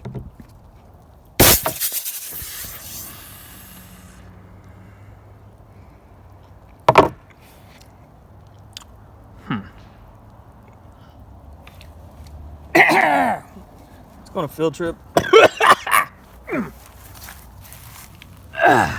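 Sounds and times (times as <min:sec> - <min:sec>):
loud rattling crash: 0:01.4 - 0:03.1.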